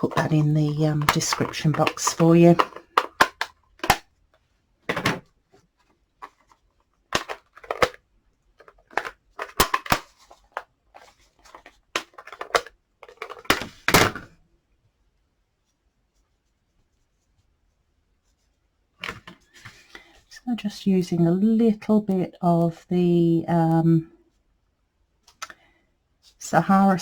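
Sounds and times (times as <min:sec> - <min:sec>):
clicks and knocks on a desk: 0:04.9 - 0:05.3.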